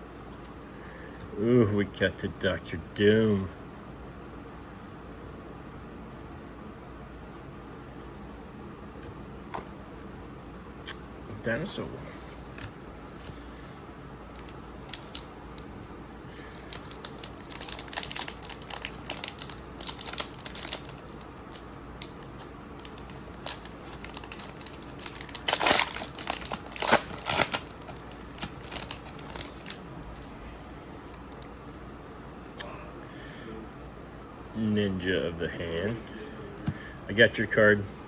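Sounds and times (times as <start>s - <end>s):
cards and foil wrapper crinkling: 14.4s - 30.4s.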